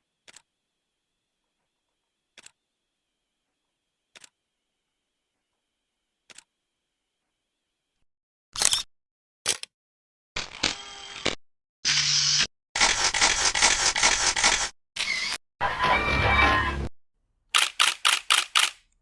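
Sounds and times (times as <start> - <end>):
camera shutter clicks: 11.9 - 14.7, 17.6 - 18.8.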